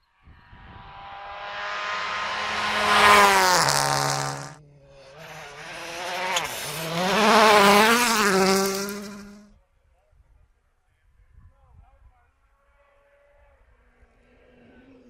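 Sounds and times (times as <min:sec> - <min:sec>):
rally cars passing at speed: 0:00.2 - 0:09.5.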